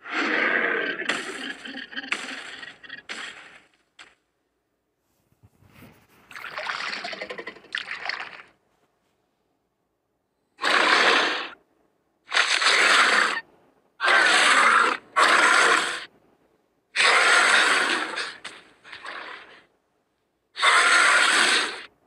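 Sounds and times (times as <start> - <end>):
harsh dinosaur calls: 17.0 - 19.6, 20.6 - 21.9.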